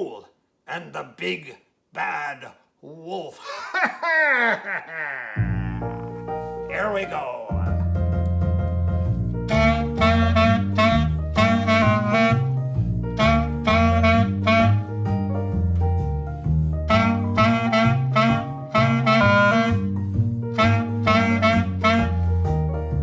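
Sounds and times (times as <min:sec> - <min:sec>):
wind instrument riffs: 0:04.4 - 0:07.8, 0:09.5 - 0:14.9, 0:16.9 - 0:19.9, 0:20.5 - 0:22.4
bass line: 0:05.2 - 0:23.0
reed instrument melody: 0:09.4 - 0:12.6, 0:13.2 - 0:14.9.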